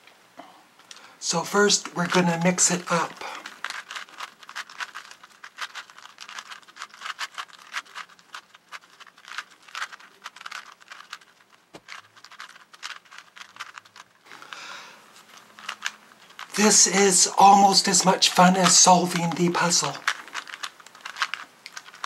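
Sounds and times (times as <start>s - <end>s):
plastic puzzle cube clicking: 3.4s - 14.2s, 15.2s - 16.5s, 19.8s - 22.0s.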